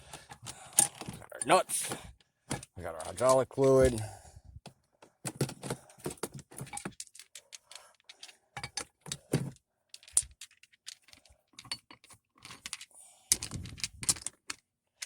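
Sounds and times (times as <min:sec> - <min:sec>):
nuts rattling: 0:06.0 - 0:14.6.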